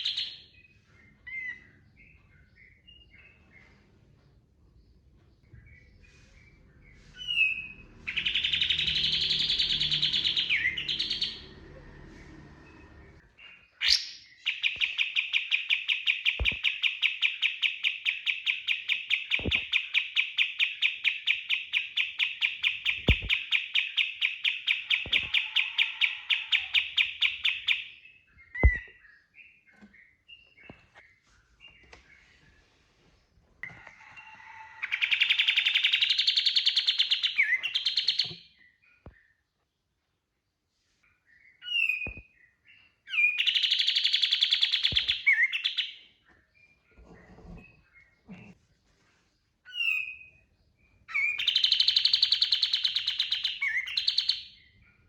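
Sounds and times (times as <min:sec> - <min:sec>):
bulbul singing: 0:07.2 - 0:12.0
sharp knocks: 0:23.0 - 0:23.4.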